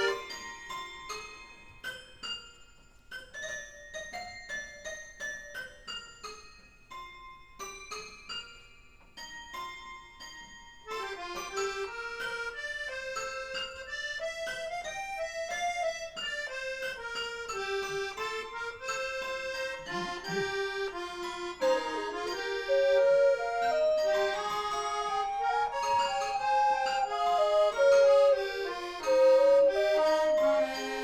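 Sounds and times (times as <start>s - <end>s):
melody of held notes over chords: 0.0s - 0.2s, 16.5s - 31.0s
plinked notes: 17.6s - 31.0s.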